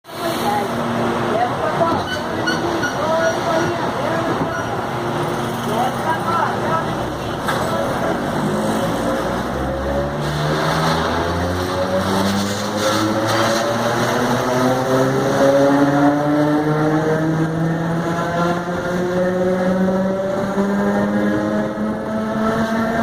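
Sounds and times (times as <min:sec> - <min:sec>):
train running rumble: 0:00.2 - 0:14.1.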